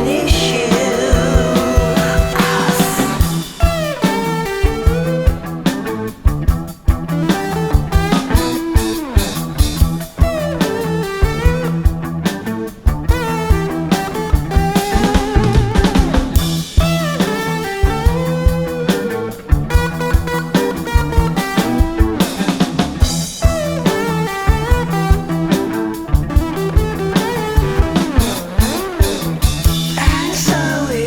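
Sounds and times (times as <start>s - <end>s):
rock music: 0.0s - 31.0s.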